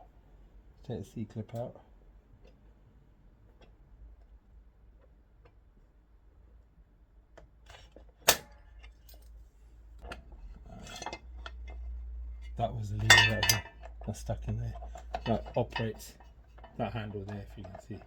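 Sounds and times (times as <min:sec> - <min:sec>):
light metallic rattling: 0:10.0 - 0:18.0.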